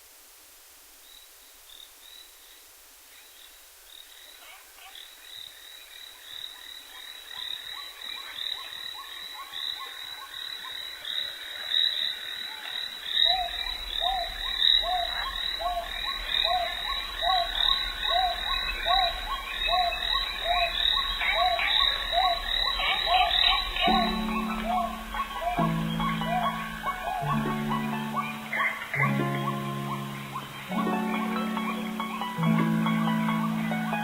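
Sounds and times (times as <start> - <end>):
frogs calling: 1.0 - 34.0
lower repeating frog call: 9.6 - 32.2.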